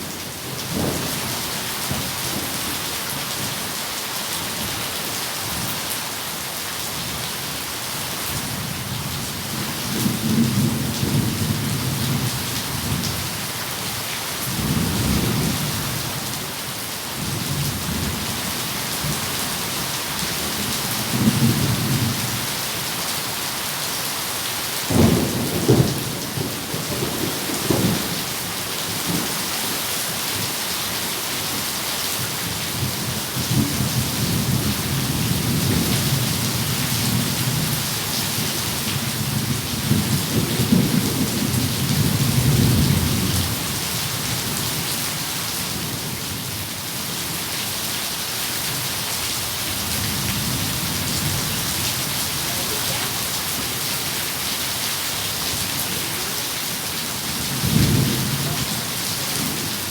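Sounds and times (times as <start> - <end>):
heavy rain: 0.0 - 59.9
thunder rumbling: 57.2 - 59.9.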